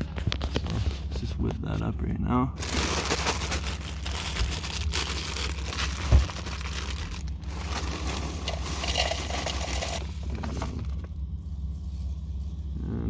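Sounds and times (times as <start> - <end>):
steady low hum: 0.0 - 13.0
packaging crinkling: 2.6 - 10.0.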